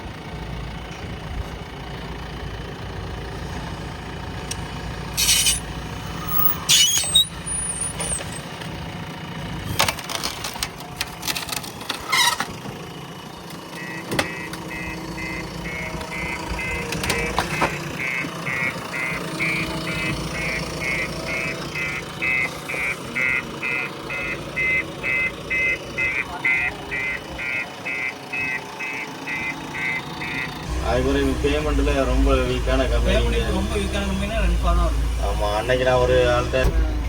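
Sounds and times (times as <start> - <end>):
diesel engine running: 0.0 - 37.0
reversing alarm beeping: 13.7 - 37.0.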